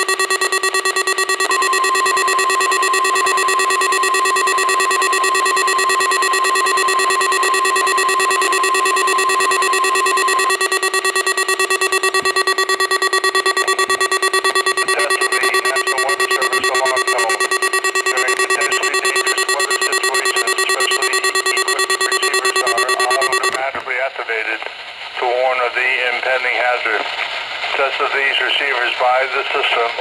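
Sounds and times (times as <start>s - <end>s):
buzzy alarm tone pulsing: 0.0s - 23.6s
warning alarm tone: 0.0s - 23.6s.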